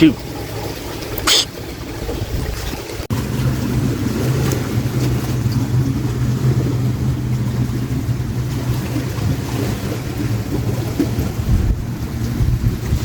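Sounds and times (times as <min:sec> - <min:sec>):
lake water lapping: 0:00.0 - 0:13.0
wind buffeting microphone: 0:01.0 - 0:13.0.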